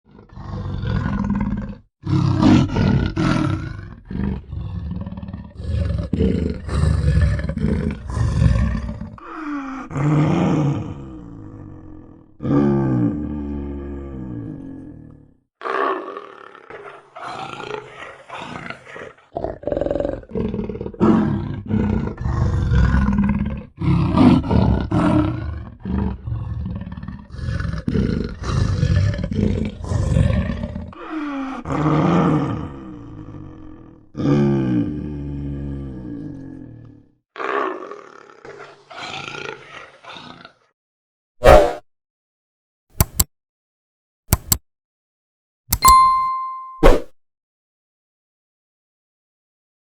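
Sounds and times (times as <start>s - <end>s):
leopard grunting: 0.1s - 13.8s
leopard growls: 0.1s - 40.7s.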